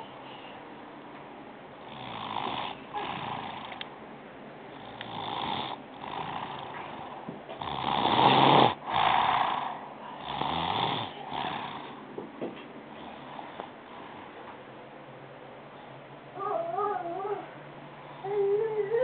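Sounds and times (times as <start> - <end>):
child snoring: 1.9 - 3.8, 4.8 - 12.0, 18.2 - 19.0.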